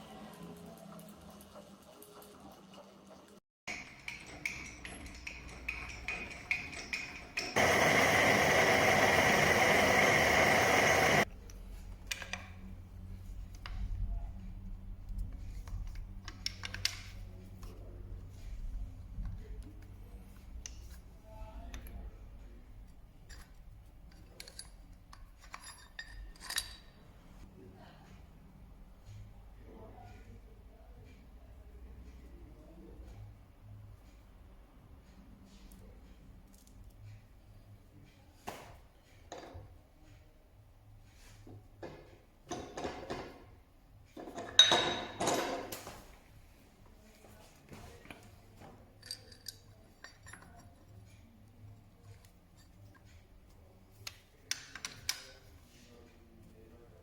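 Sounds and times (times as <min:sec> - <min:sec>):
metal parts and tools clinking: 0:03.7 - 0:08.1, 0:15.3 - 0:17.8, 0:22.9 - 0:27.2, 0:44.2 - 0:45.8, 0:48.9 - 0:55.6
steady low hum: 0:07.6 - 0:16.3
metal parts clattering: 0:24.1 - 0:27.0, 0:49.0 - 0:50.9.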